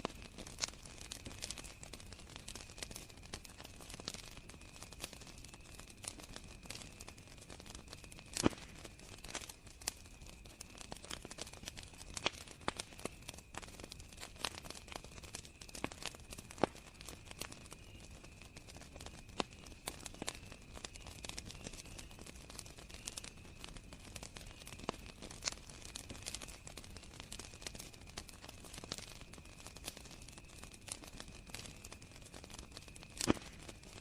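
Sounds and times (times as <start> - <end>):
campfire crackling and popping: 0.0 - 34.0
crickets trilling: 0.0 - 34.0.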